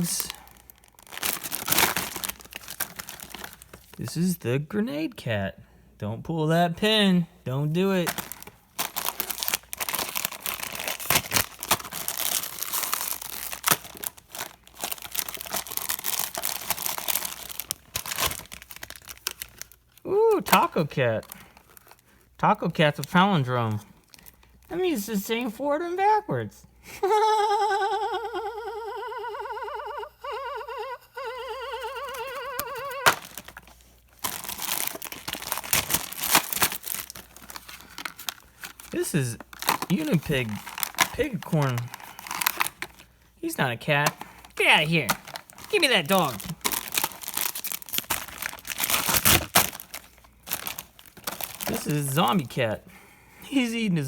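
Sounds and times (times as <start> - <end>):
toy packet torn and crinkled: 0.0 - 4.2, 7.7 - 25.0, 31.6 - 52.8.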